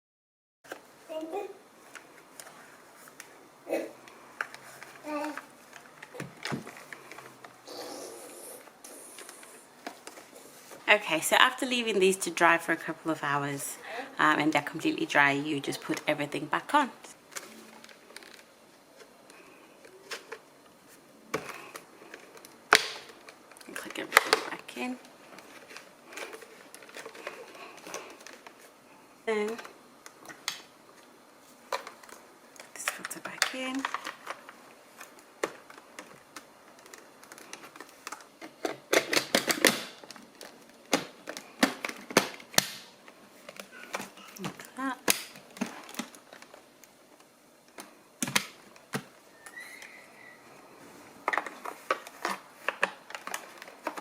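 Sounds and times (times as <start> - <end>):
plastic parts clicking and tapping: 31.7 - 42.8, 47.2 - 49.1, 51.2 - 54.0.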